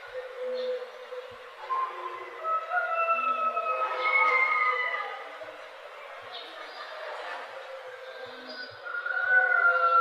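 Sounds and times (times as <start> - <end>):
bird chirp: 0.0 - 2.6.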